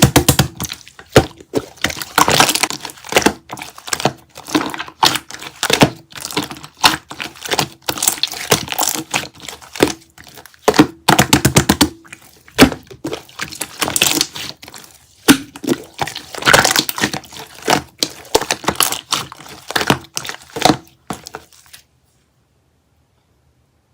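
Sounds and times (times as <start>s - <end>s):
plastic and tape crinkling: 0.0s - 21.9s.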